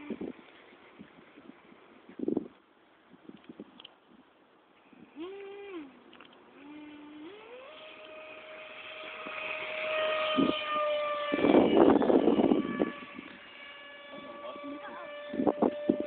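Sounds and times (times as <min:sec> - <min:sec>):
electric fan motor whining: 0:00.0 - 0:01.8, 0:05.0 - 0:16.0.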